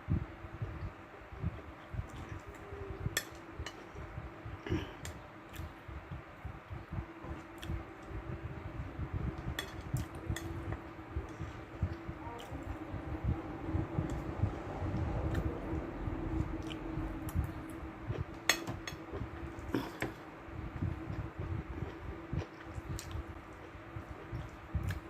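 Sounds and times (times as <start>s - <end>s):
steady low hum: 0.0s - 25.0s.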